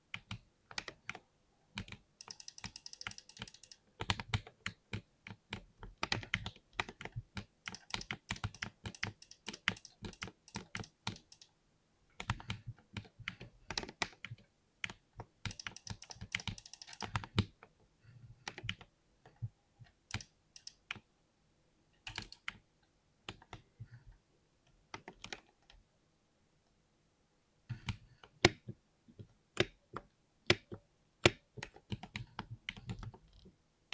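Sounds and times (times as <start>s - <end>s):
mechanical keyboard typing: 1.8s - 11.5s, 12.2s - 17.6s, 20.1s - 21.1s, 22.1s - 22.6s, 29.6s - 33.5s.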